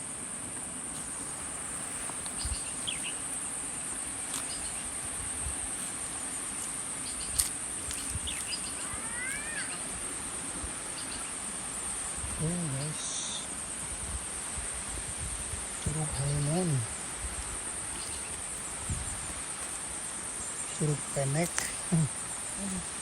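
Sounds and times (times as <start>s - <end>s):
insects droning: 0.0s - 23.0s
bird chirps: 2.3s - 3.2s, 7.0s - 9.8s
rising and falling bird call: 8.3s - 9.8s.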